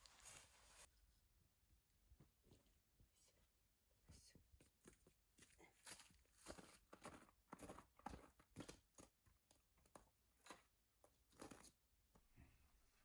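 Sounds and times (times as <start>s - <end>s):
faint crunching and rustling: 0.0s - 0.9s, 4.2s - 12.6s.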